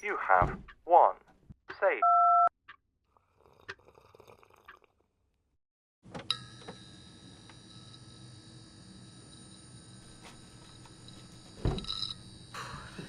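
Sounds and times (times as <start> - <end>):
phone beep: 2.0 - 2.5.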